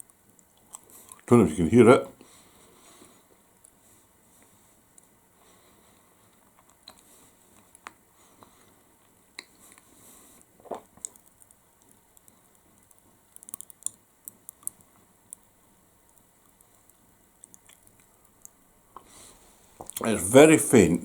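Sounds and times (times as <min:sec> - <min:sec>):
popping candy crackling: 0:10.5 - 0:20.1.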